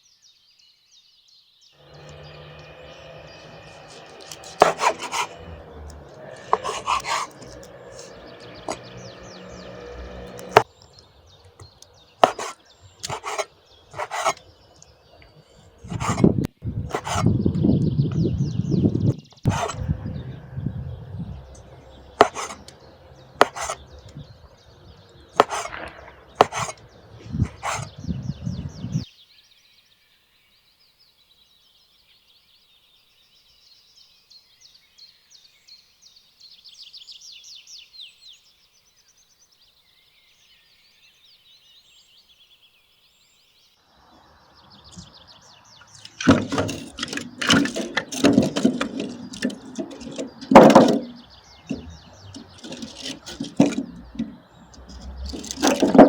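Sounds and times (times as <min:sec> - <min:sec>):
small birds chirping: 0:00.0 - 0:56.0
sharp knocks and clatter: 0:22.2 - 0:22.8, 0:23.4 - 0:23.8, 0:25.4 - 0:26.8, 0:46.0 - 0:56.0.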